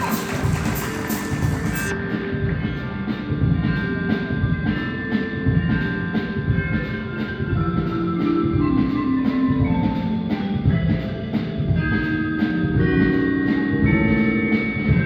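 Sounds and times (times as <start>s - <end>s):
concert band playing: 0.0s - 2.0s
steady percussion beat: 0.0s - 2.0s.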